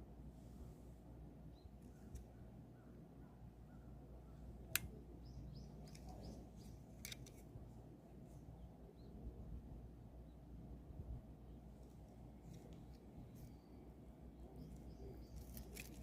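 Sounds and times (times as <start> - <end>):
low background rumble: 0.0 - 16.0
faint bird chirps: 1.5 - 6.9, 8.3 - 9.5, 13.2 - 16.0.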